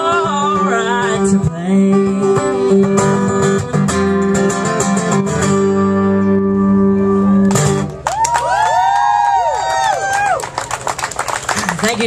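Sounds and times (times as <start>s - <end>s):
acoustic guitar chords: 0.0s - 8.0s.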